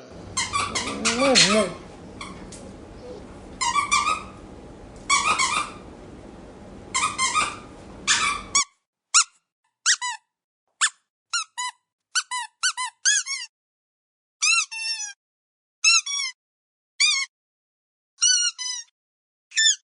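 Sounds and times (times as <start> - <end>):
squeaky dog toy squeaking: 0.4 - 2.4, 3.6 - 4.4, 5.1 - 5.8, 6.9 - 13.5, 14.4 - 15.2, 15.8 - 16.4, 17.0 - 17.3, 18.2 - 18.9, 19.5 - 19.8.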